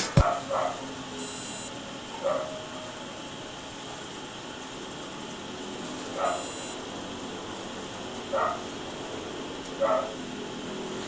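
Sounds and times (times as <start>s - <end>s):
dog barking: 0.0s - 0.9s, 2.1s - 2.9s, 6.1s - 6.6s, 8.3s - 8.8s, 9.8s - 10.2s.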